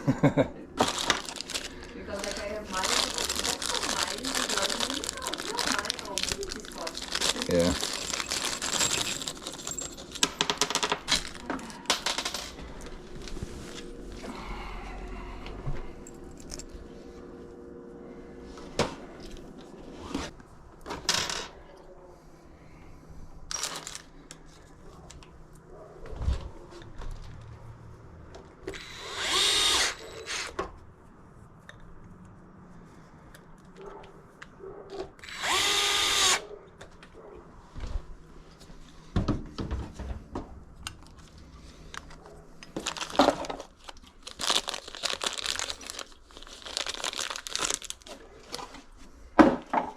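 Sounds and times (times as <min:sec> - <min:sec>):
power drill running: 0:28.7 - 0:30.6, 0:35.2 - 0:36.4.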